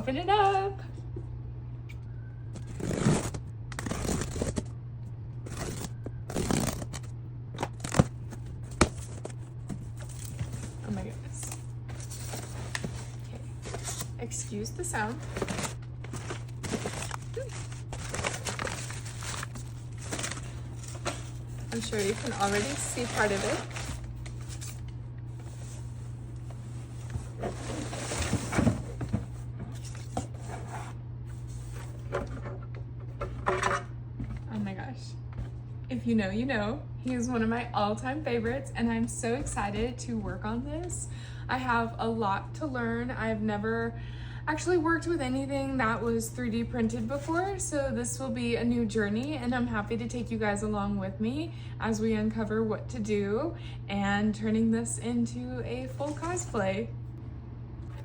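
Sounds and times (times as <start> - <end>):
steady low hum: 0.0 - 58.0
cardboard packaging rustling and tearing: 2.6 - 4.7, 5.5 - 14.2, 14.8 - 32.3.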